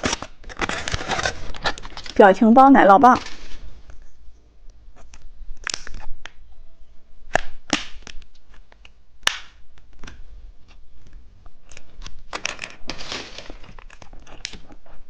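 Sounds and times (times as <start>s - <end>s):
plastic packaging crinkling: 0.0s - 2.3s, 11.6s - 15.0s
sharp plastic snaps: 5.0s - 6.4s, 7.3s - 10.2s.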